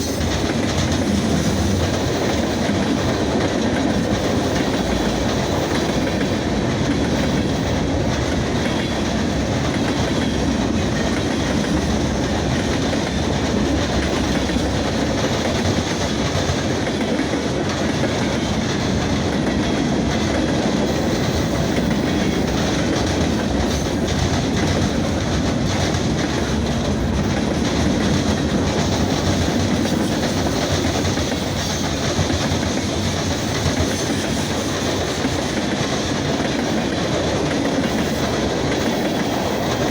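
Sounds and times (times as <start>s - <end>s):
freight train cars rolling: 0.0s - 39.9s.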